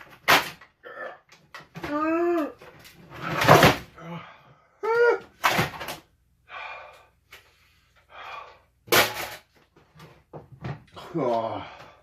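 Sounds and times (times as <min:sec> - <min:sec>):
man breathing hard in gasps: 0:06.5 - 0:08.8.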